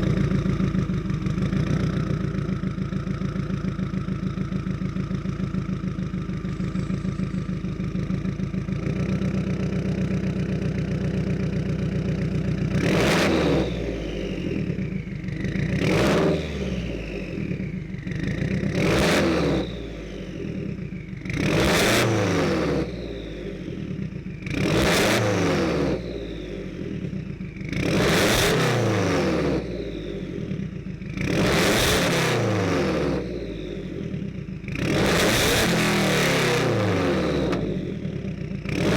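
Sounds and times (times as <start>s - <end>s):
car engine idling and revving: 0.0s - 38.9s.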